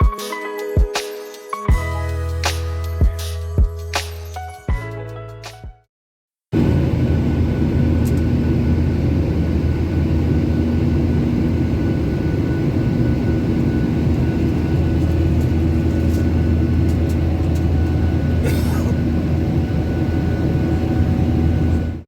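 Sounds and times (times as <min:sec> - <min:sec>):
airplane cabin engine rumble: 0:06.6 - 0:22.0.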